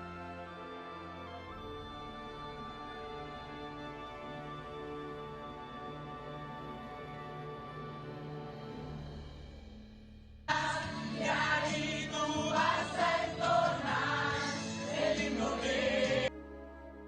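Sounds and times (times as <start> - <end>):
soft background music: 0.0 - 9.8, 10.5 - 17.0
choir singing: 10.5 - 16.3.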